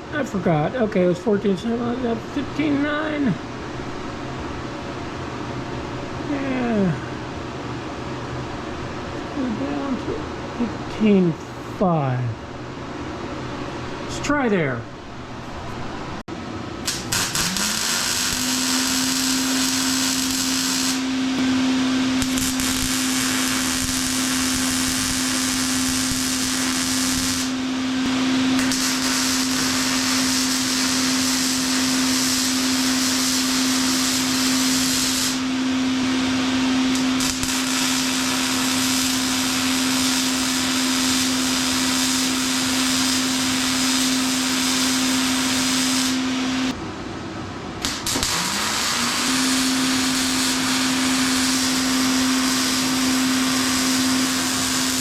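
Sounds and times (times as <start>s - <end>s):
welding arc crackling hiss: 16.8s - 46.8s, 47.8s - 55.0s.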